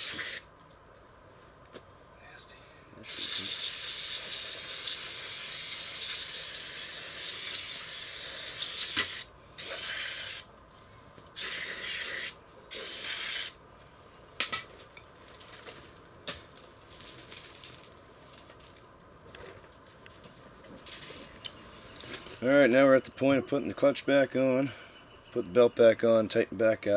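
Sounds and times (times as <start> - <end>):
pressurised spray hissing: 0.0 - 0.4, 3.0 - 10.5, 11.4 - 13.6.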